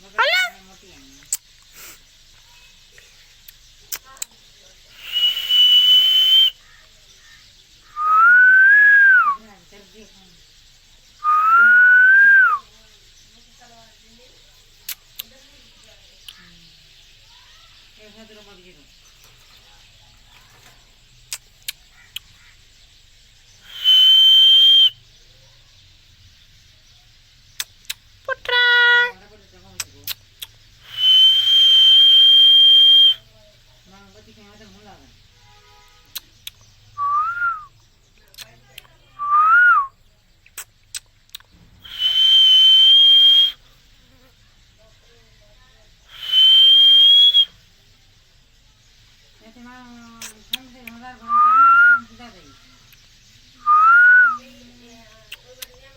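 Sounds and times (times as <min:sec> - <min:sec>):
parrot sharp chirps: 0:00.1 - 0:00.6
parrot shrill whistle call: 0:00.2 - 0:00.6, 0:05.0 - 0:06.6, 0:23.7 - 0:25.0, 0:30.9 - 0:33.2, 0:41.8 - 0:43.6, 0:46.1 - 0:47.5.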